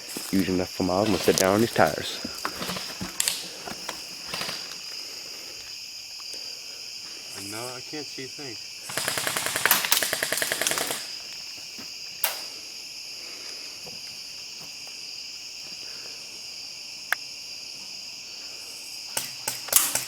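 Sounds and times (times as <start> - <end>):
crickets chirring: 0.0 - 20.0
sharp cracks: 0.9 - 5.0, 8.9 - 11.4, 19.1 - 20.0.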